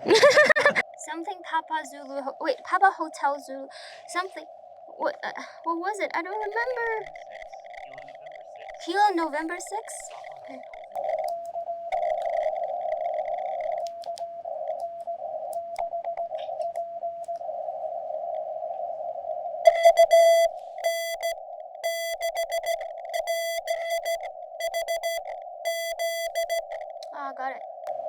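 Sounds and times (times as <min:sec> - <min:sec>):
receiver hiss: 0:05.7 - 0:18.6, 0:19.7 - 0:27.1
buzzy morse code tone: 0:06.2 - 0:14.8, 0:19.7 - 0:27.0
morse code tone: 0:19.7 - 0:27.0.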